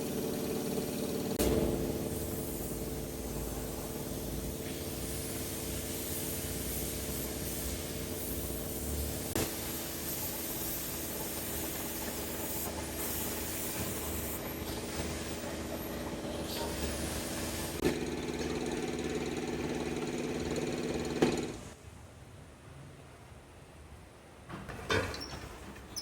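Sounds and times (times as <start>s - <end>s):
spraying hiss: 1.3s - 17.8s.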